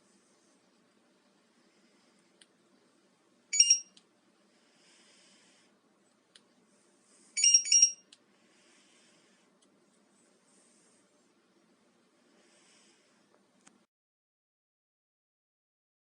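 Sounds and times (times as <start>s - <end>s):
key fob high-pitched beeps: 3.6s - 4.0s, 7.4s - 8.1s.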